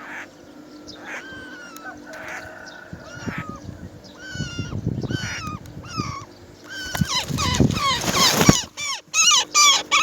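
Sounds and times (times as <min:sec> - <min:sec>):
nestlings begging squeals: 0:01.0 - 0:10.0
rustle: 0:06.6 - 0:09.6.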